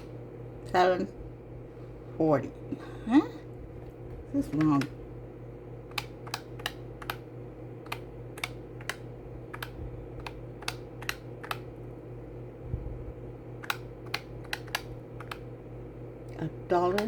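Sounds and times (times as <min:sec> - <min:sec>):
low steady hum: 0:00.0 - 0:17.0
calculator keys clicking: 0:05.9 - 0:07.2, 0:07.8 - 0:11.7, 0:13.6 - 0:15.5.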